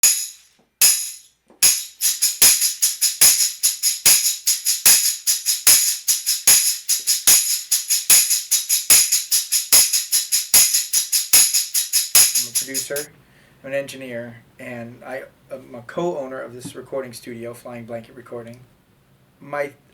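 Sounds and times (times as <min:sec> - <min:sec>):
tambourine jingle hits: 0:00.0 - 0:13.1.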